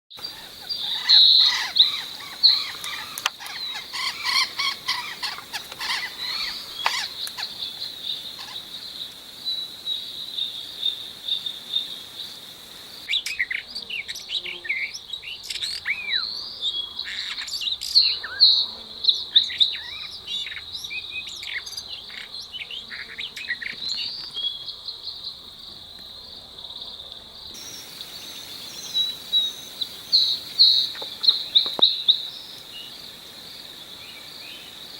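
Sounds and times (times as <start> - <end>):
birds chirping and calling: 0.1 - 9.0
background hiss: 0.1 - 34.9
high-pitched insect drone: 0.2 - 13.4, 27.6 - 34.9.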